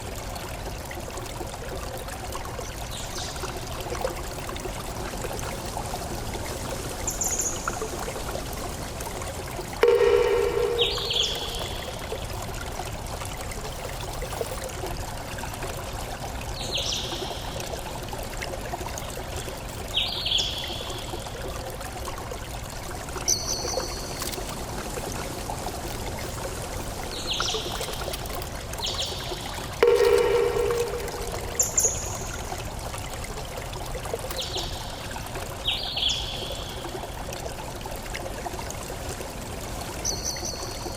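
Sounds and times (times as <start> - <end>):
water trickling: 0.0 - 40.9
bird calling: 9.8 - 12.0.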